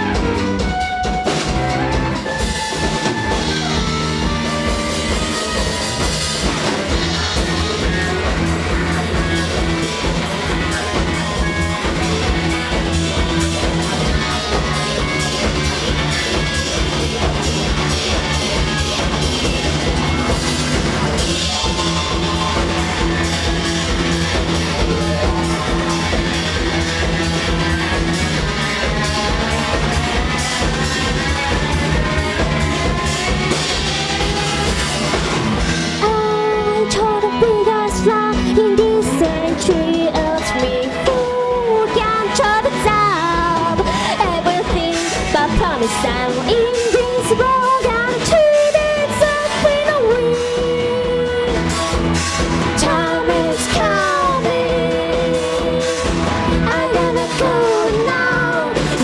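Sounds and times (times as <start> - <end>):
instrumental rock band: 0.0 - 59.0.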